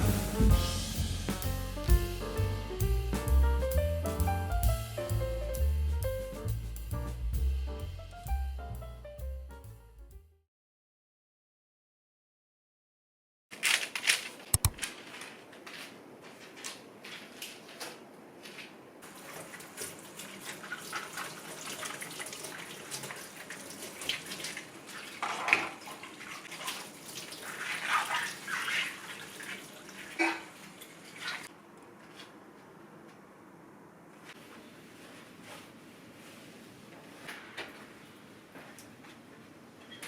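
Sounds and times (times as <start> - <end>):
water running from a tap: 19.1 - 31.5.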